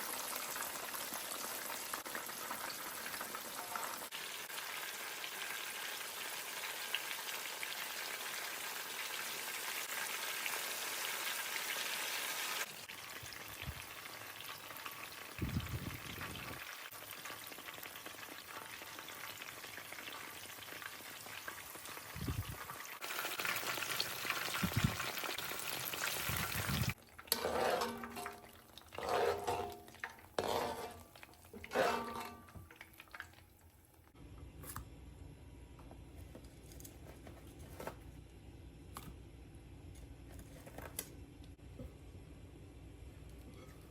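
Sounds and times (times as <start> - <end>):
fritters sizzling in hot oil: 0.0 - 32.3.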